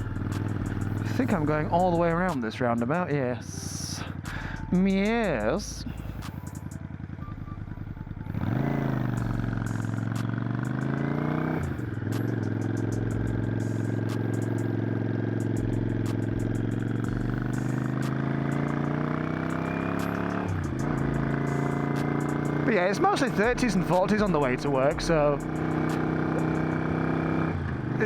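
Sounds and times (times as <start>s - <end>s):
motorcycle engine accelerating: 0.0s - 2.8s, 3.5s - 28.0s.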